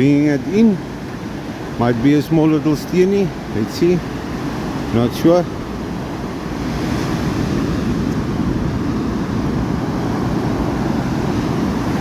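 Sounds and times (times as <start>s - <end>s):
sea wash: 0.0s - 12.0s
wind on microphone: 0.0s - 12.0s.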